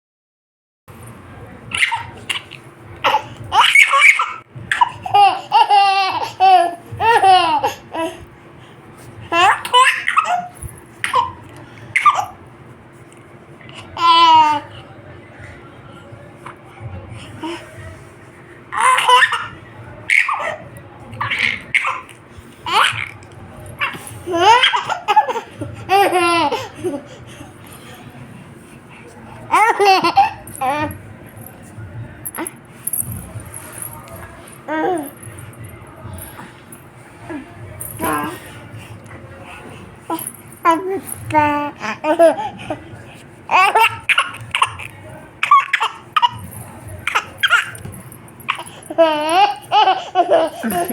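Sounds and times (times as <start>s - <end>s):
baby laughing: 1.7s - 8.2s, 9.3s - 11.4s, 12.0s - 12.4s, 18.8s - 20.6s, 21.2s - 23.2s, 23.8s - 27.2s, 29.5s - 30.9s, 40.6s - 42.8s, 43.5s - 46.4s, 47.0s - 47.8s, 48.5s - 50.9s.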